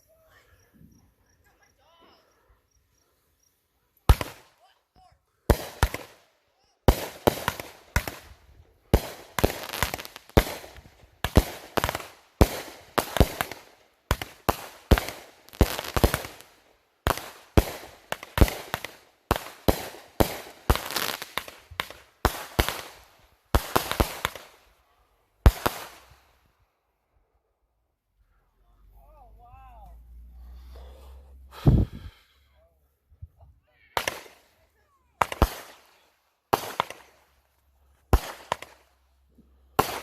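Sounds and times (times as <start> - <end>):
fireworks bangs with crackling: 4.1 - 4.6, 5.4 - 24.6, 25.4 - 26.3, 33.9 - 34.6, 35.2 - 37.4, 38.1 - 39.0, 39.7 - 40.0.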